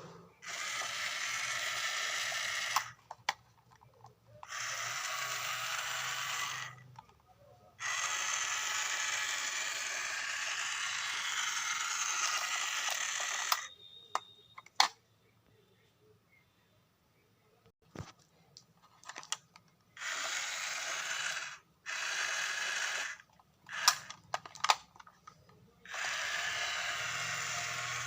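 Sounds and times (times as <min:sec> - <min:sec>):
toy motor and gears whirring: 0:00.4 - 0:14.8, 0:20.0 - 0:28.0
sharp clicks: 0:11.6 - 0:15.0, 0:23.2 - 0:26.1.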